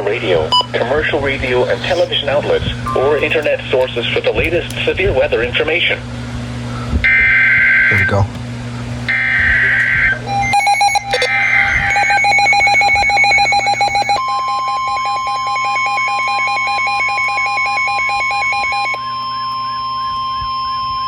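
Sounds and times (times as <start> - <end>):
steady warning tone: 0.0 - 21.0
pulsing electronic alarm beep: 7.1 - 8.2, 9.1 - 21.0
screeching digital header bursts: 9.1 - 20.9.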